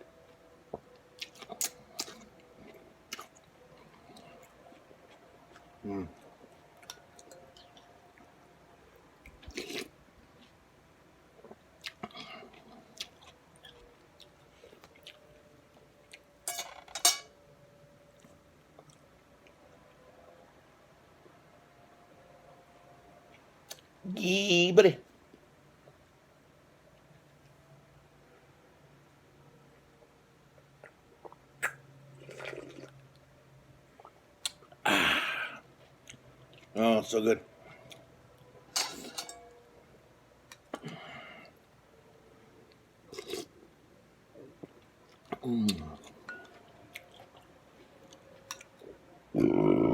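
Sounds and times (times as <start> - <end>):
close chewing and mouth smacks: 0.7 - 8.4, 9.2 - 10.6, 11.4 - 16.3, 18.1 - 19.6, 30.5 - 33.3, 33.9 - 34.8, 35.8 - 36.8, 44.4 - 49.0
slurping noodle soup: 31.6 - 32.9.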